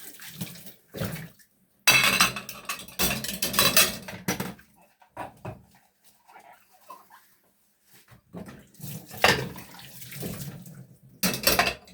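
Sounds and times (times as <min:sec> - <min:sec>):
dishes and cutlery clattering: 0:01.9 - 0:04.6, 0:09.2 - 0:09.7, 0:11.2 - 0:11.9.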